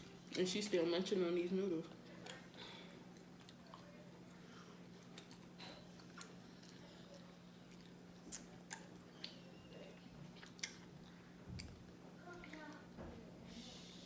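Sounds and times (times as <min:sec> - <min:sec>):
steady low hum: 0:00.0 - 0:14.0
chewing close up: 0:02.2 - 0:12.8.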